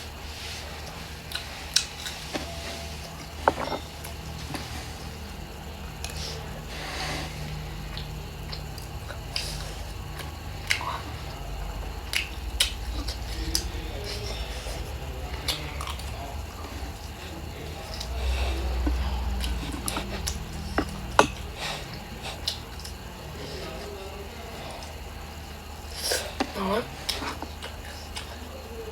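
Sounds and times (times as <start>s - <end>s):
chewing and mouth sounds: 0.8s - 6.4s, 7.4s - 23.8s.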